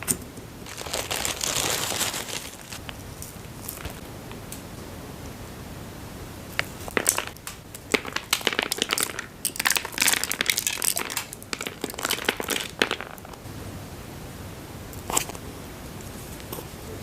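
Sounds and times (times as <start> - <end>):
candy wrapper crinkling: 0.6 - 4.0, 6.9 - 13.4.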